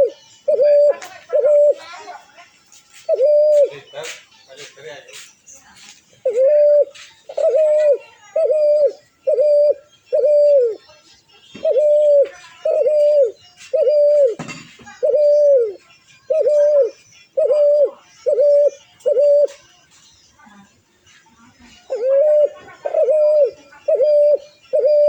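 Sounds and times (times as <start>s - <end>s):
bird cooing hoots: 0.0s - 1.9s, 3.1s - 3.7s, 6.2s - 10.8s, 11.6s - 19.6s, 21.9s - 25.0s.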